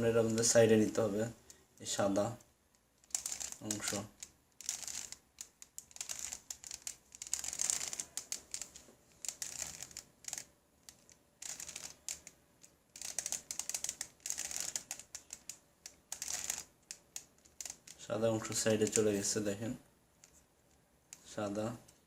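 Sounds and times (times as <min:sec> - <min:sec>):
puzzle cube plastic clicking: 0:02.7 - 0:18.0, 0:18.6 - 0:19.1.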